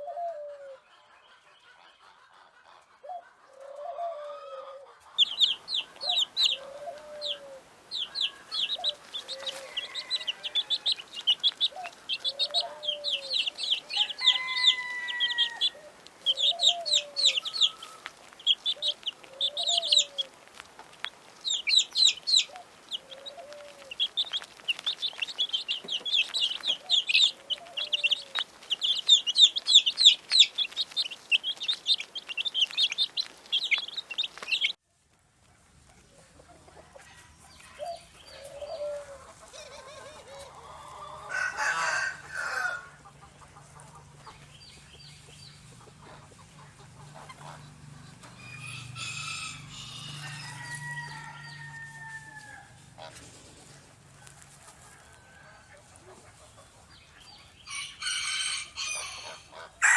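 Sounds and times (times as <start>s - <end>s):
chickens calling: 0.0s - 34.8s, 36.0s - 59.9s
chicks peeping: 4.9s - 34.8s, 36.2s - 52.0s
rooster crowing: 6.5s - 11.1s, 12.3s - 18.2s, 40.6s - 43.0s, 48.4s - 52.8s, 57.7s - 59.9s.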